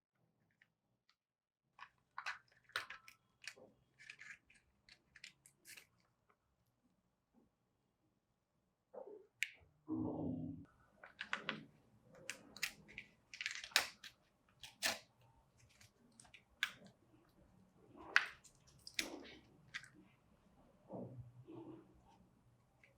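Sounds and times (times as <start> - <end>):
plastic packaging crinkling: 12.3 - 16.8.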